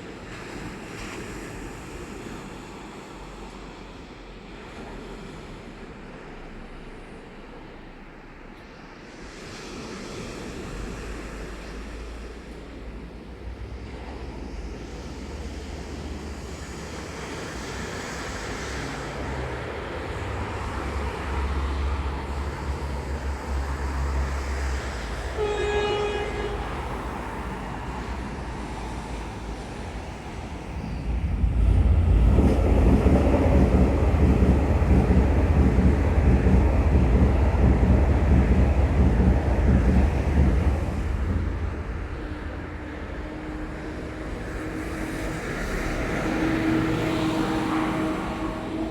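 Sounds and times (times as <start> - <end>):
train rumbling past: 0.0 - 48.9
train horn blast: 25.0 - 28.4, 40.8 - 48.9.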